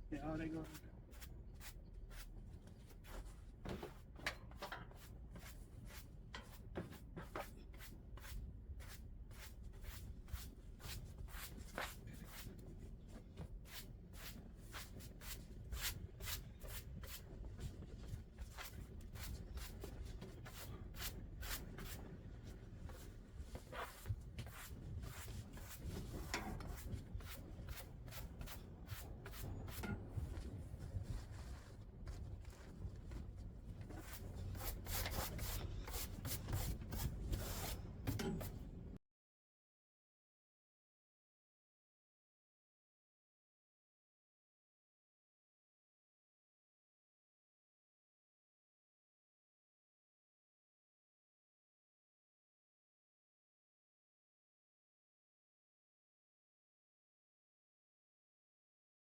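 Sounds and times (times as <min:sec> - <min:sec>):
hand broom sweeping: 0:34.0 - 0:37.8.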